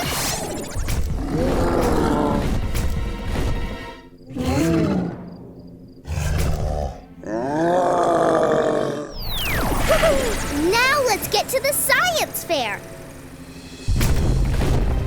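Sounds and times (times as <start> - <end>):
roar-like growls: 1.1 - 2.6, 4.3 - 5.3, 6.0 - 9.2
cartoon soundtrack music: 9.2 - 13.1.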